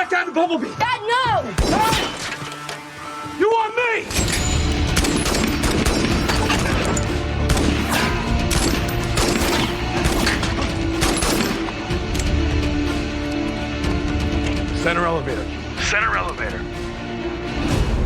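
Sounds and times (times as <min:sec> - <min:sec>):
orchestral film score: 0:00.0 - 0:18.0
rapid gunfire: 0:04.9 - 0:06.9, 0:07.5 - 0:11.6.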